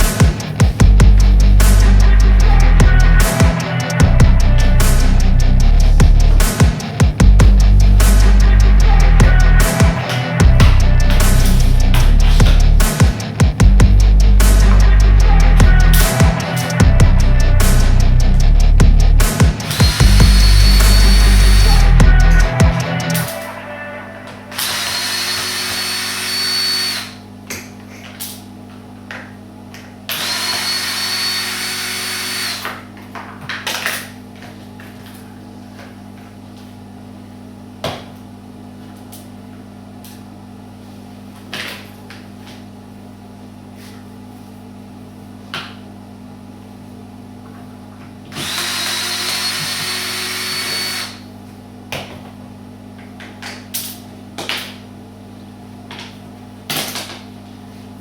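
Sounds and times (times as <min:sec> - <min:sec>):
power drill motor whine: 0:24.5 - 0:27.2, 0:30.1 - 0:32.6, 0:48.3 - 0:51.2.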